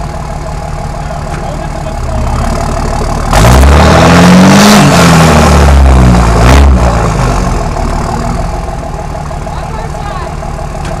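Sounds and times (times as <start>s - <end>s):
diesel engine revving: 0.0s - 11.0s.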